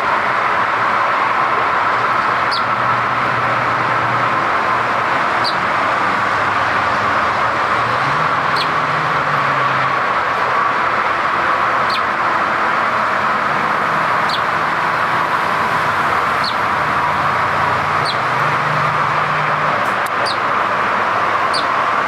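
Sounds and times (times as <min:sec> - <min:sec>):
low engine hum: 0:00.0 - 0:22.0
traffic noise: 0:00.0 - 0:22.0
short high bird chirps: 0:02.5 - 0:02.7.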